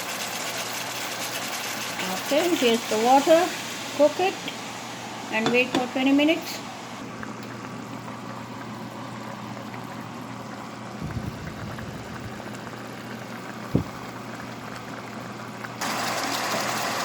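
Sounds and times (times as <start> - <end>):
gravy bubbling in a pot: 7.0 - 17.0.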